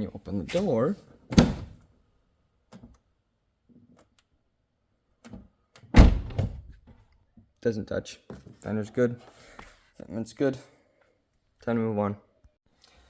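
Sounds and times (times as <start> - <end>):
car door shutting thump: 6.0 - 6.7.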